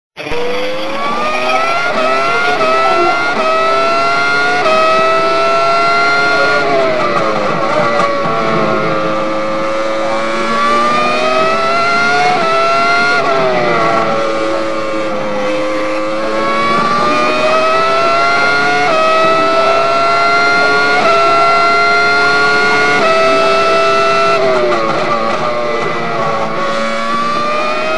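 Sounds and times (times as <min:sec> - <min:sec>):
car engine revving: 0:00.2 - 0:27.9.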